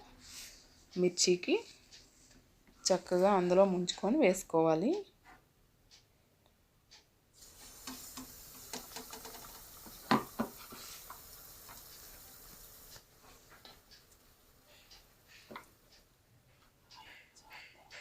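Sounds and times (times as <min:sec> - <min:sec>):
chillies sizzling in hot oil: 0:07.4 - 0:15.7
small crackles: 0:07.4 - 0:16.0.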